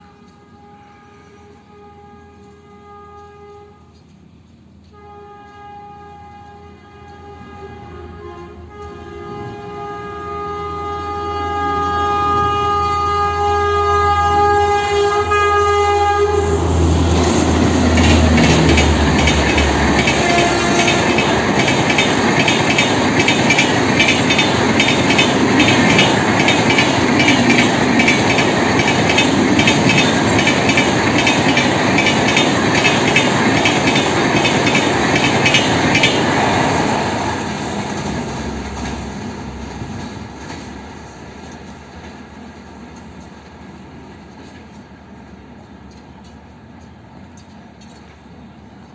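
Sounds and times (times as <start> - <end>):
train horn blast: 0.0 - 4.1, 4.8 - 39.0
train wheels clickety-clack: 16.5 - 48.9.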